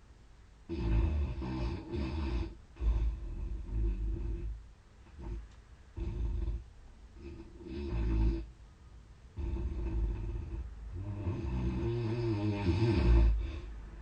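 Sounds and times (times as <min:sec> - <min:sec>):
person snoring loudly: 0:00.7 - 0:04.5, 0:07.2 - 0:08.5, 0:09.4 - 0:13.7.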